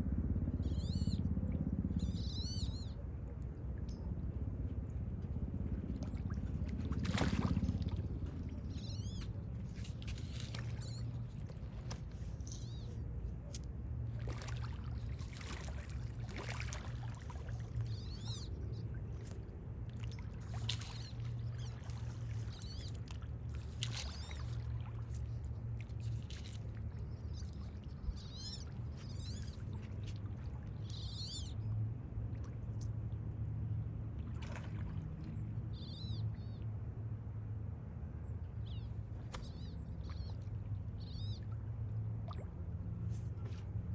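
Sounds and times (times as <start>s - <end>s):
water splashes: 5.8s - 33.3s, 34.0s - 35.5s, 39.0s - 43.8s
birds chirping: 7.2s - 13.0s, 17.3s - 19.4s, 20.7s - 23.2s, 27.1s - 29.9s, 30.8s - 31.6s, 38.6s - 41.5s.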